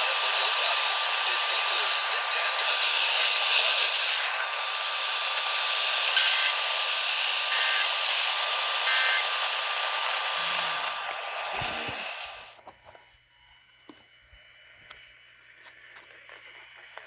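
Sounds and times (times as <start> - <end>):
radio static hiss: 0.0 - 13.1, 13.9 - 17.0
faint steady whine: 0.0 - 17.0
two-tone data burst warble: 8.9 - 9.3.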